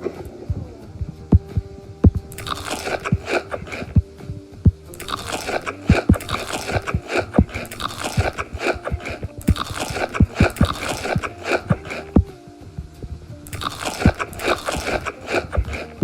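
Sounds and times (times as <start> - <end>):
crunchy chewing of food: 2.3 - 4.0, 5.0 - 12.2, 13.5 - 16.0.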